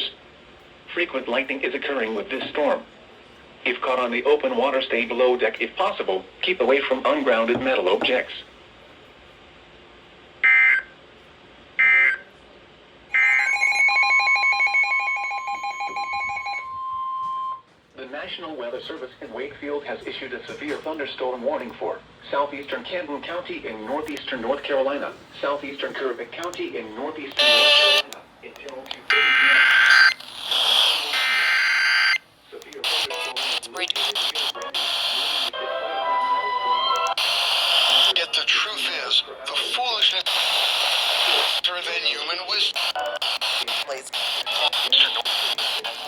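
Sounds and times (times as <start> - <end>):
steady high alert tone: 13.2 - 17.6
radio music: 22.4 - 46.0.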